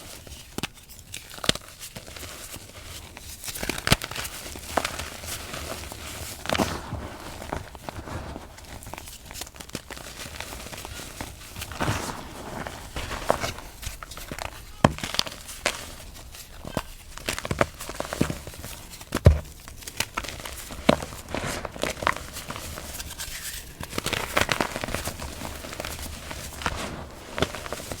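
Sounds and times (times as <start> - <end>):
chalk crunching and crackling: 0.3 - 28.0
heavy thump: 11.6 - 15.2.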